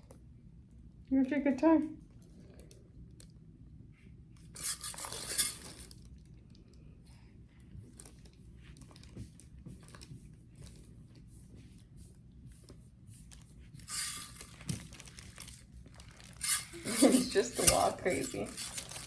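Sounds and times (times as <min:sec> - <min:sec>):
faint room hum: 0:00.0 - 0:19.0
crinkling rustle: 0:04.5 - 0:06.6, 0:07.8 - 0:19.0.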